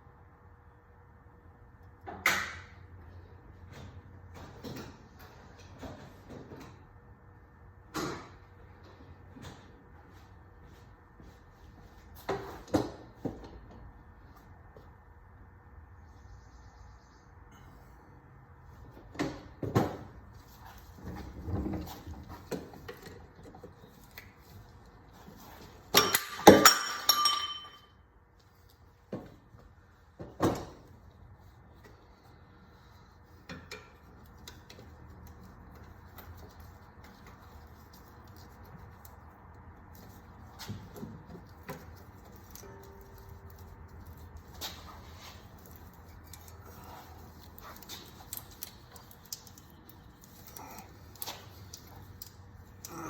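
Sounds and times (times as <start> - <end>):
metal hand tools clinking: 26.0 - 27.9.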